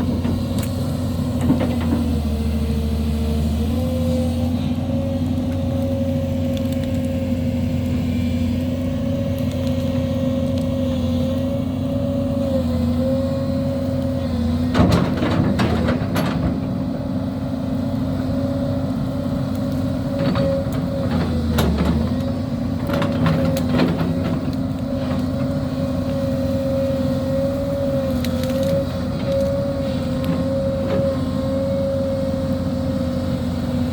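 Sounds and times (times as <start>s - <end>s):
excavator diesel engine running: 0.0s - 33.9s
brush cracking and knocking: 21.3s - 31.1s.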